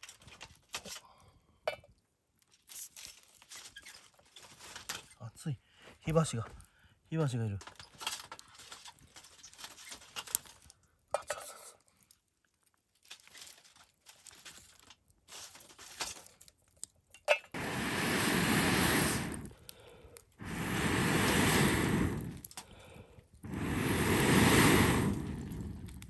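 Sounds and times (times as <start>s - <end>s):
loud rushing noise: 17.6s - 19.5s, 20.4s - 22.4s, 23.5s - 25.9s.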